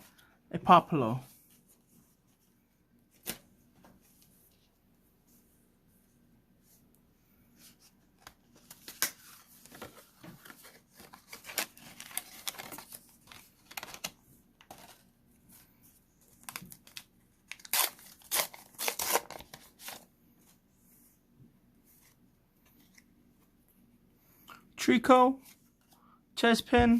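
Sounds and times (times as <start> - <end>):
card wrapper tearing and crinkling: 10.4 - 15.0, 16.3 - 20.1.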